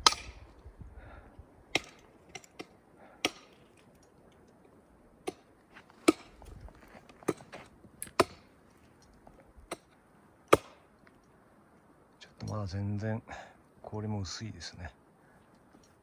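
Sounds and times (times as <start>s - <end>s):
faint steady hiss: 0.0s - 16.0s
footsteps crunching on icy snow: 5.6s - 7.8s.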